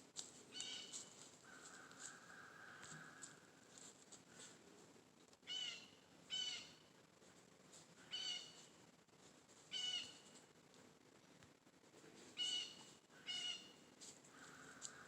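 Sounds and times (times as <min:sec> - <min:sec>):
bird calling: 0:00.5 - 0:03.4, 0:05.4 - 0:06.8, 0:08.0 - 0:08.6, 0:09.7 - 0:10.2, 0:12.4 - 0:15.0.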